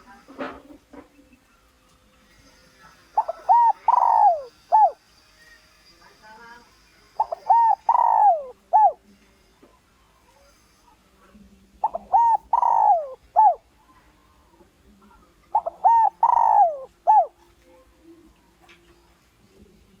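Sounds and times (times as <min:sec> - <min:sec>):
dove cooing: 0:03.1 - 0:05.0, 0:07.2 - 0:09.0, 0:11.8 - 0:13.8, 0:15.5 - 0:17.5.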